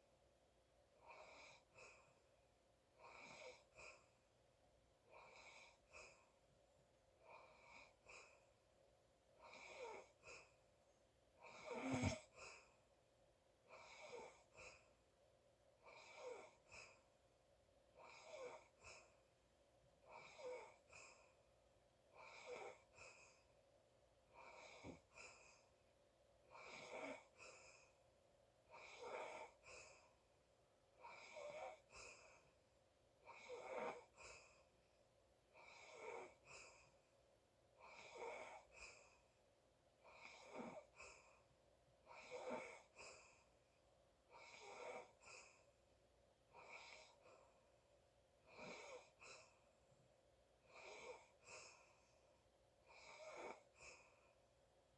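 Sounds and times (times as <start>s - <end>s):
wheezy breathing: 11.4s - 12.8s.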